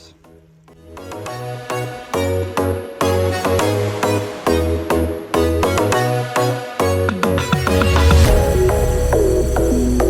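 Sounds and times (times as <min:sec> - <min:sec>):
background music with deep bass: 0:00.0 - 0:10.0.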